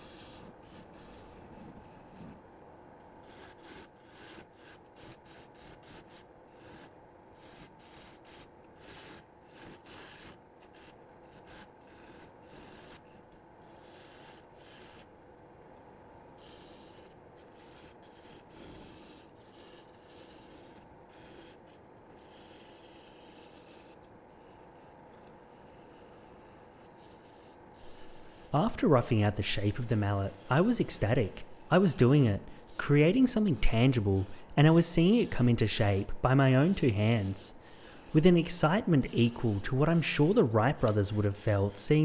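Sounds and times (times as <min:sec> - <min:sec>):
lathe tool scraping wood: 0:27.8 - 0:42.0.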